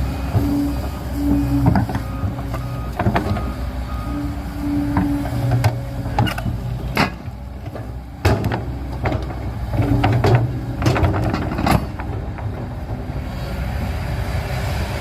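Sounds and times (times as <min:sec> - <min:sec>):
excavator engine running: 0:00.0 - 0:15.0
metallic clanks and knocks: 0:04.9 - 0:13.0.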